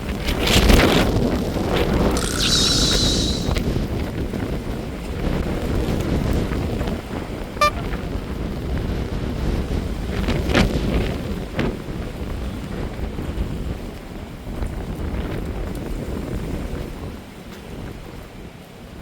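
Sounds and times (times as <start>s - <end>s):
gusty wind on microphone: 0.0s - 13.8s.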